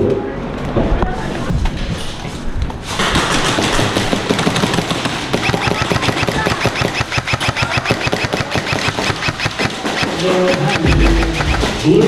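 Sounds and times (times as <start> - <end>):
airsoft guns firing bursts: 3.0 - 12.0.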